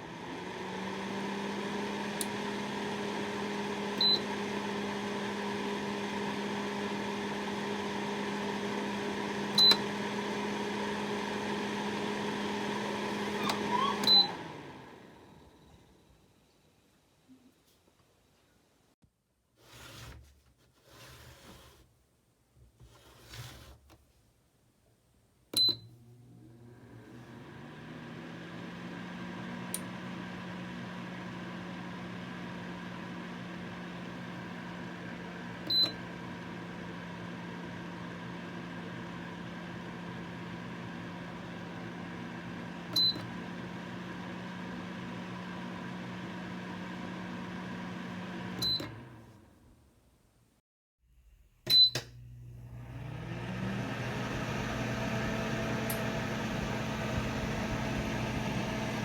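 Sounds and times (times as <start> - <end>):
space heater beeping: 13.3 - 14.7
heater fan humming with airflow: 53.4 - 59.0.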